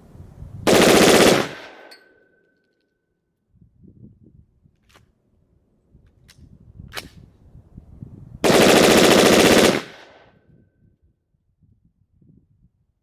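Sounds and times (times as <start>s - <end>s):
rapid gunshots: 0.7s - 1.9s, 8.4s - 10.2s.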